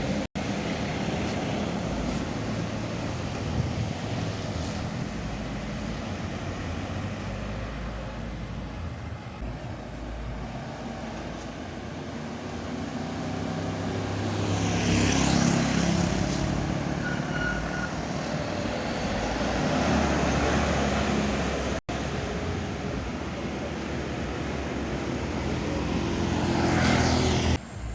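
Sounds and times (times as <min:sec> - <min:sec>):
heavy vehicles driving past: 0:00.0 - 0:27.9
tyre and air hiss: 0:01.2 - 0:06.0, 0:16.0 - 0:16.7.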